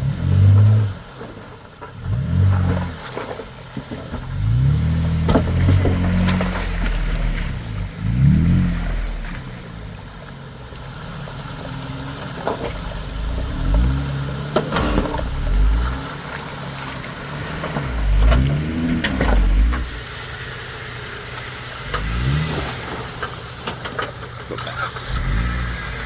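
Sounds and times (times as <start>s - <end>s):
engine revving in bursts: 4.3s - 10.0s, 12.7s - 20.2s, 21.8s - 23.3s, 24.9s - 26.0s
sharp knocks and clunks: 5.2s - 7.0s, 12.4s - 20.0s.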